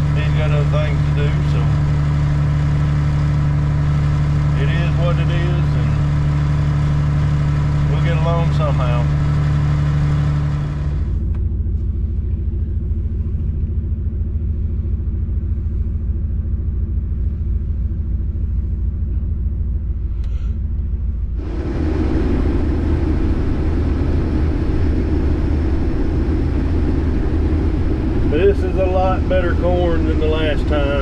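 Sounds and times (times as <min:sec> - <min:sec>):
higher machine noise: 0:00.0 - 0:11.2, 0:21.4 - 0:31.0
combine harvester engine drone: 0:00.0 - 0:31.0.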